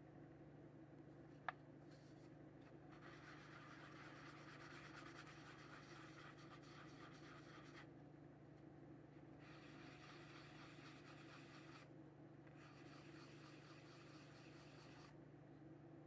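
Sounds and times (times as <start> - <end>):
low steady hum: 0.0 - 6.4, 7.2 - 16.0
sanding plastic rasping: 3.0 - 7.8, 9.4 - 11.9, 12.6 - 15.1.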